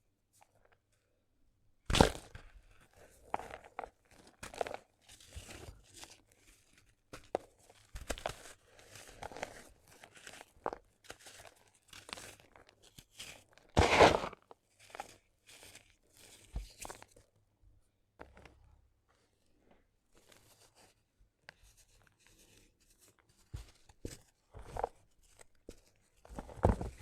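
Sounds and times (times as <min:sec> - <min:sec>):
sand cement crumbling and crunching: 0:13.8 - 0:14.4.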